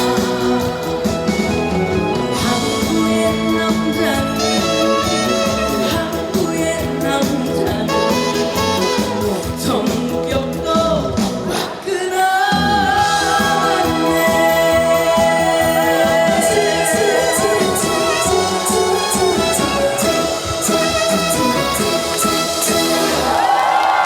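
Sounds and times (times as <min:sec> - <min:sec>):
live band with singer: 0:00.0 - 0:24.0.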